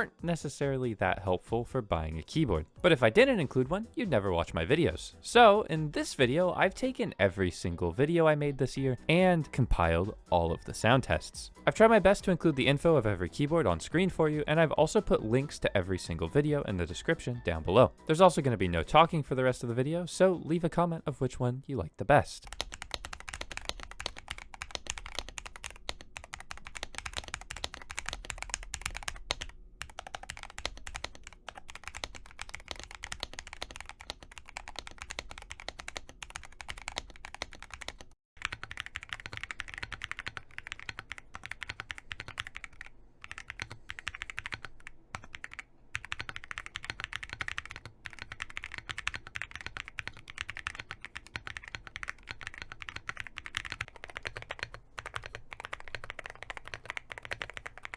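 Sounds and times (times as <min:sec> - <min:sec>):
typing on mechanical keyboard: 0:22.4 - 0:57.9.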